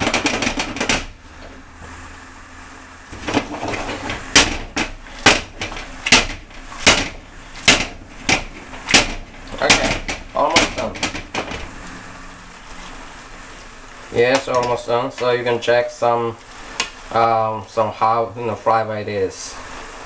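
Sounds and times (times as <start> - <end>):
pan and utensil knocking: 0.0 - 1.1, 3.2 - 11.6.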